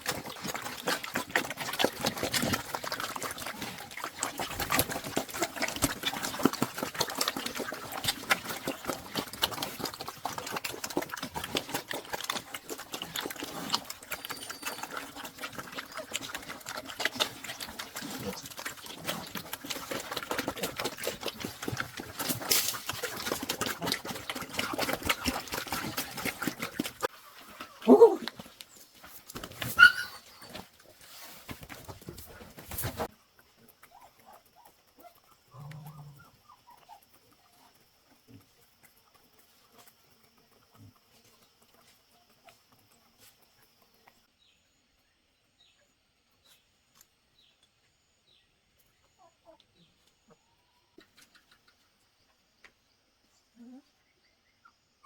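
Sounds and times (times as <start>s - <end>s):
dog yelping: 27.8s - 28.3s, 29.7s - 30.6s.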